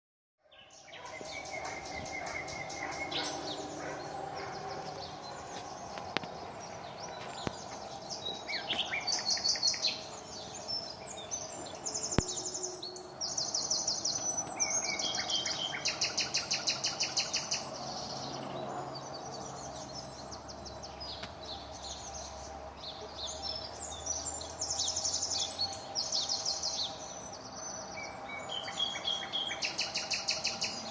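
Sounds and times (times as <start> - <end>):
nightingale singing: 0.4 - 30.9
steady background hum: 1.0 - 16.9.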